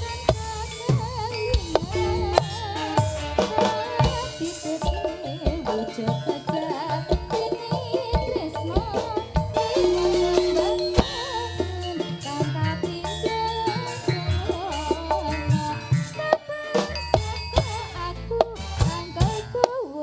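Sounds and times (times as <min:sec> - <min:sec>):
ornamented melody line: 0:00.0 - 0:20.0
hand drums beating: 0:00.9 - 0:16.4.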